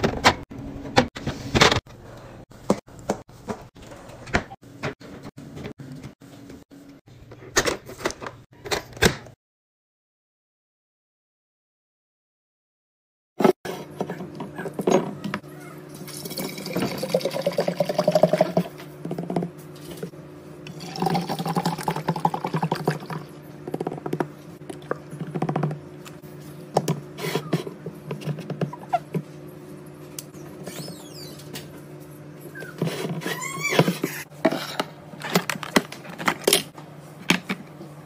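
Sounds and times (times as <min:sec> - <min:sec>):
liquid pouring into container: 0:16.1 - 0:18.6, 0:20.7 - 0:23.3.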